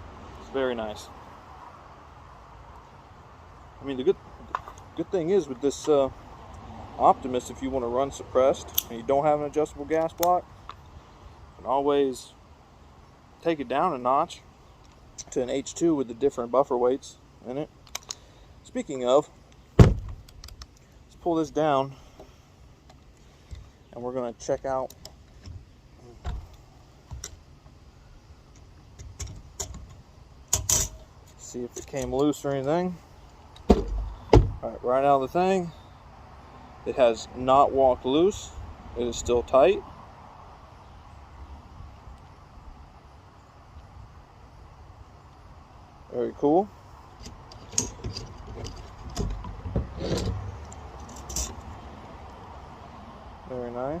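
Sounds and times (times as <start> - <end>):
rifle handling clicks and knocks: 17.8 - 18.2, 19.5 - 20.9
rifle metallic clicks and knocks: 19.5 - 20.9, 28.5 - 31.1, 47.2 - 51.6.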